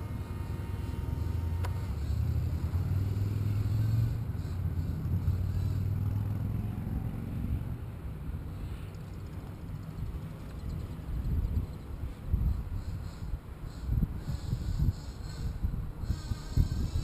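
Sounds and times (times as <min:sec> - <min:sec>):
faint high whine: 0:00.0 - 0:06.0
wind buffeting microphone: 0:09.2 - 0:17.0.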